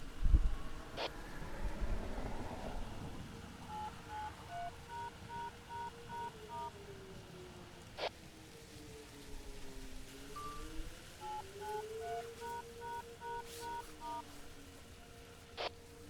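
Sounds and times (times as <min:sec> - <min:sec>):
distant warning siren winding down: 0:00.6 - 0:16.0
touch-tone beeps: 0:03.7 - 0:06.7, 0:10.4 - 0:14.4.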